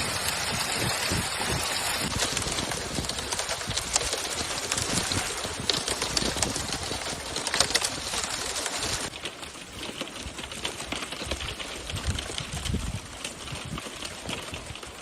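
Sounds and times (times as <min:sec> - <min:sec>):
thin ice crunching and crackling: 0:00.0 - 0:14.9.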